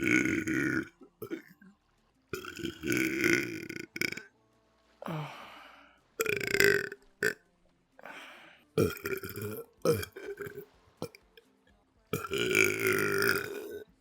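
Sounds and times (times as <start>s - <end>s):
person belching: 0.0s - 1.6s, 2.3s - 4.3s, 5.0s - 5.6s, 6.2s - 7.4s, 8.1s - 11.2s, 12.1s - 13.9s.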